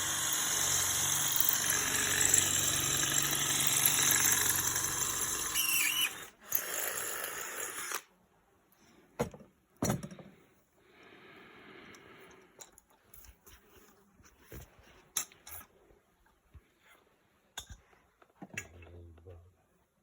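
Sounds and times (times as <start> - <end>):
chainsaw running: 0.0 - 8.0.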